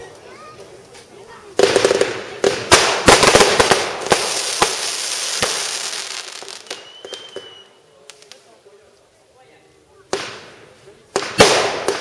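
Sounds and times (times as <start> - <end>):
fireworks crackling: 0.0 - 12.0
fireworks bangs: 1.4 - 8.4, 10.1 - 12.0
thin steady whistle: 6.7 - 7.8.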